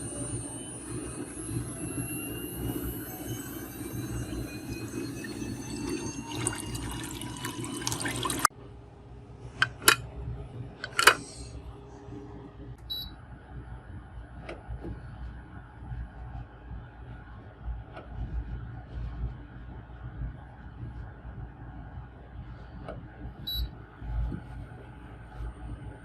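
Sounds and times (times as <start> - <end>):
stepper motors whining: 0.0 - 7.8.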